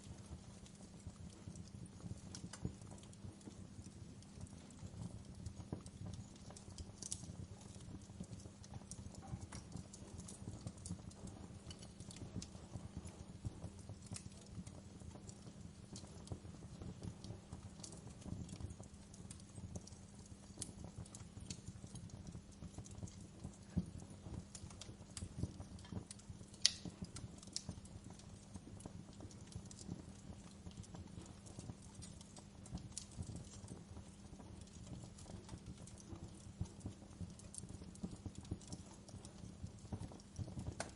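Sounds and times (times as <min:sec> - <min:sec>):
wood fire crackling and popping: 0:00.0 - 0:40.9.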